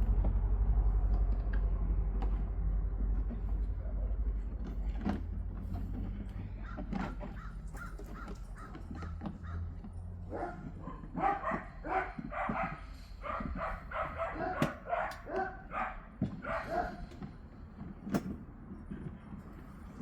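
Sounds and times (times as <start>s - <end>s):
dog barking: 6.6s - 9.6s, 10.2s - 17.2s.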